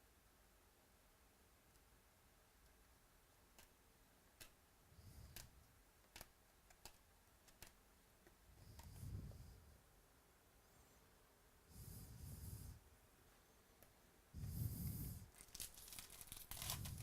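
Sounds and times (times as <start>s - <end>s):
cards clicking and tapping: 5.3s - 8.9s
soft rustling: 14.4s - 17.0s.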